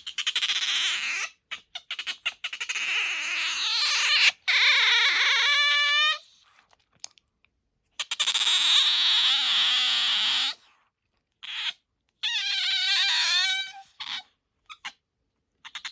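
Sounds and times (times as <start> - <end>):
otter squealing: 11.4 - 14.9.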